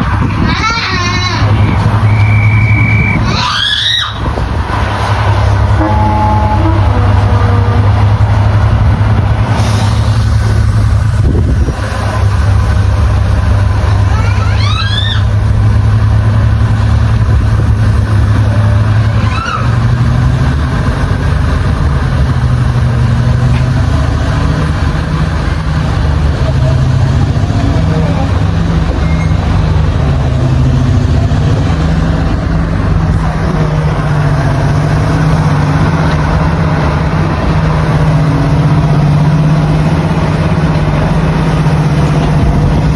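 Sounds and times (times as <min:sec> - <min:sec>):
diesel locomotive engine drone: 0:00.0 - 0:42.9
short high squeaks: 0:29.0 - 0:29.5.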